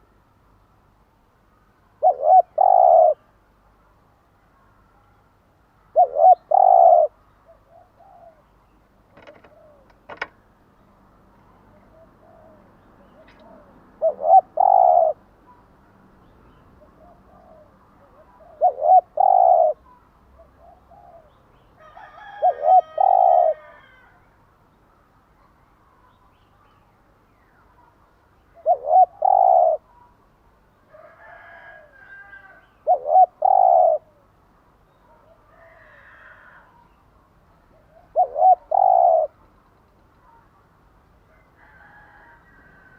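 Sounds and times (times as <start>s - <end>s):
dove cooing: 2.0s - 3.3s, 5.8s - 8.5s, 9.1s - 10.3s, 11.7s - 15.2s, 16.8s - 24.2s, 28.5s - 30.1s, 31.0s - 34.3s, 37.7s - 39.4s.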